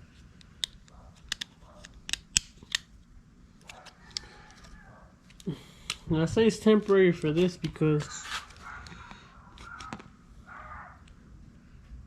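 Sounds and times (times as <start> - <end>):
plastic parts clicking: 0.4 - 2.9.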